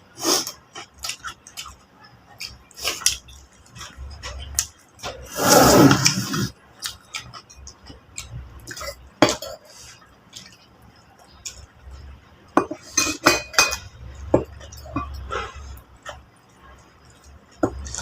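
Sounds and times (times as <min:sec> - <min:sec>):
plates and utensils clinking: 0:12.6 - 0:16.2.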